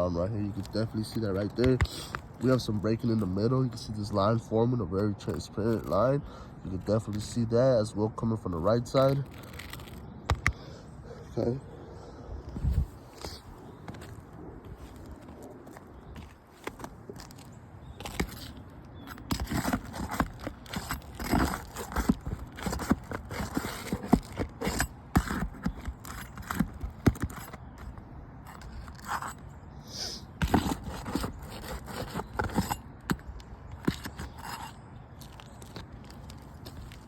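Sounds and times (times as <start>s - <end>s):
hand tools scraping shingles: 18.0s - 37.0s.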